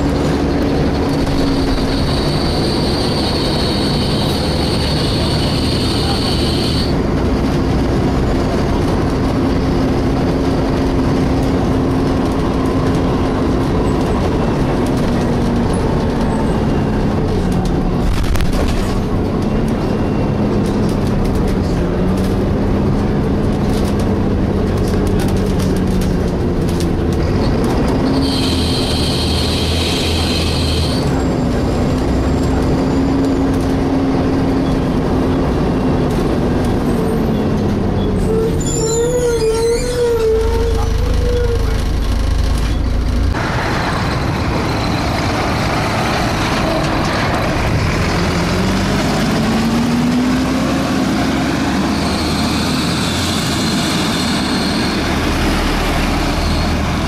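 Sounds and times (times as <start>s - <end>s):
bus engine droning: 0.0s - 57.0s
high-pitched screech: 28.1s - 31.0s, 51.8s - 55.2s.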